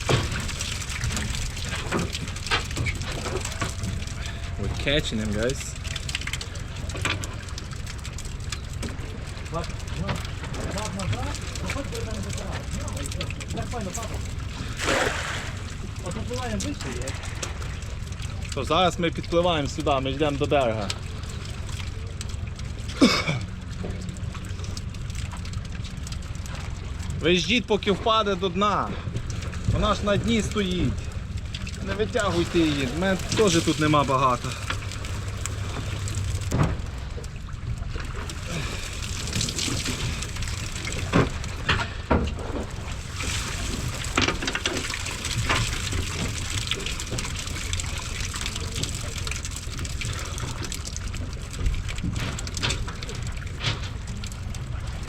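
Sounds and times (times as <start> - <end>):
sharp knocks on boat: 0.0 - 3.9, 35.9 - 37.1, 41.0 - 42.8
boat motor humming: 0.0 - 55.0.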